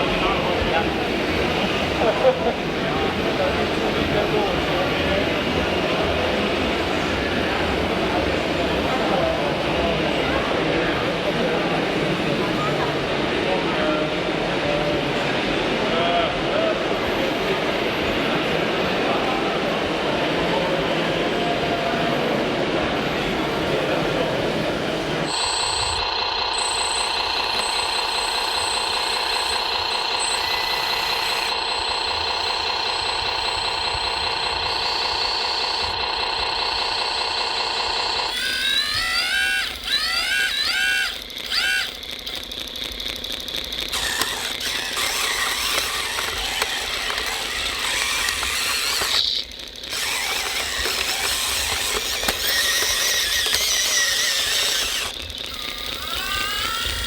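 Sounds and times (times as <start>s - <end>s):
electric motor whine: 21.2s - 57.0s.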